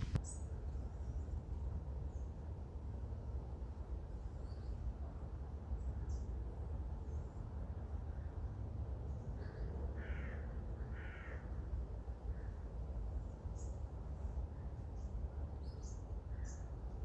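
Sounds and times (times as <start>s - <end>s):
steady low rumble: 0.0s - 0.2s.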